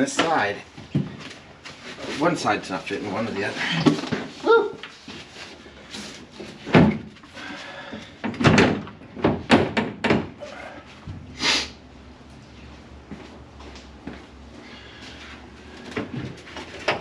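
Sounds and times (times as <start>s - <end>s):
sheet metal knocks and thumps: 8.2s - 10.4s.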